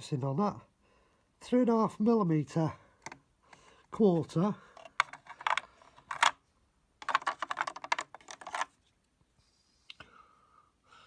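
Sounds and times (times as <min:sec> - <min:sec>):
metal sockets clicking in case: 0:04.8 - 0:06.4.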